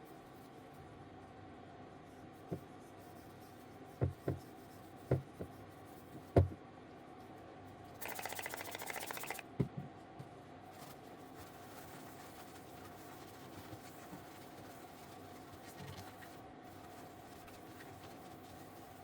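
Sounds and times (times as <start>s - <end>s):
spray bottle spraying: 8.0s - 9.4s.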